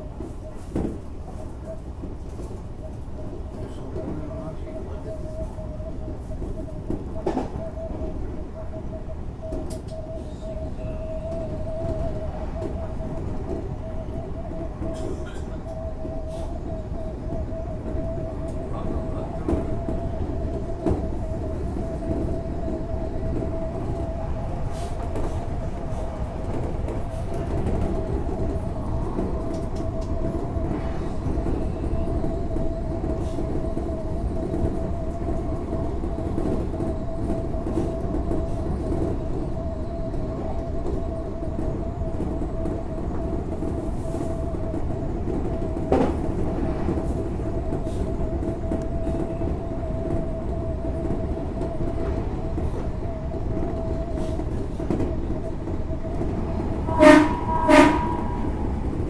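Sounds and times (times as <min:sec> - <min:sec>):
train wheels rumbling on rail: 0:00.0 - 0:59.0
rail joint clicks: 0:09.4 - 0:59.0
constant tone: 0:51.1 - 0:59.0.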